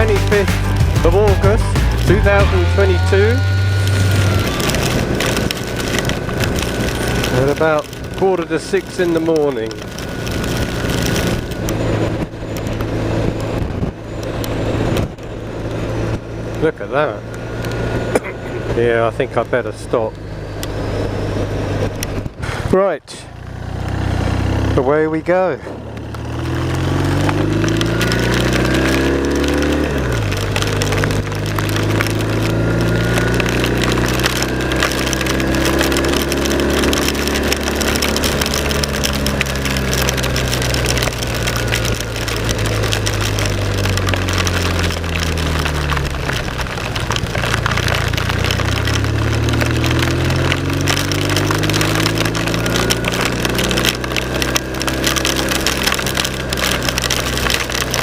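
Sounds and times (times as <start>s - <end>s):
motorcycle engine revving: 0.0s - 58.0s
wind and road noise: 0.0s - 58.0s.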